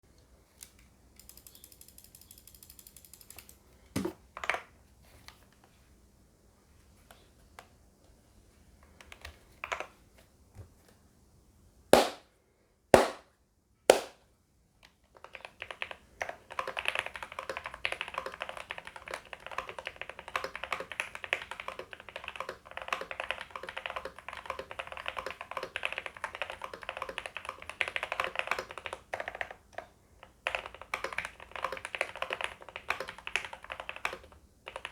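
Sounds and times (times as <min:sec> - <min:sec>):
fast typing on keyboard: 0:15.1 - 0:34.9.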